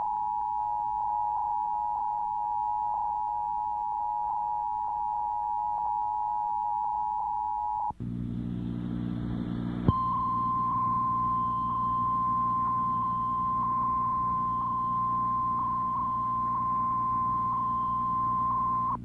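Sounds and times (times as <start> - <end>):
low hum: 7.7 - 19.0
two-tone attention signal: 9.9 - 19.0.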